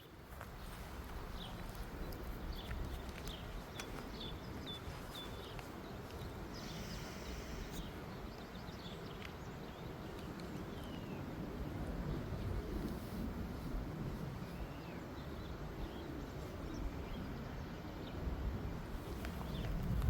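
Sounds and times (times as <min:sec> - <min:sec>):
small birds chirping: 0:00.0 - 0:13.3, 0:14.1 - 0:18.3, 0:18.9 - 0:20.0
steady low rumble: 0:00.0 - 0:20.0.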